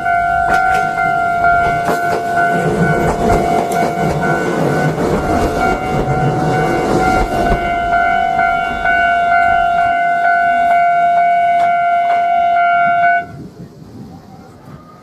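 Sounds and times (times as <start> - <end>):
electronic crossing bell: 0.0 - 13.3.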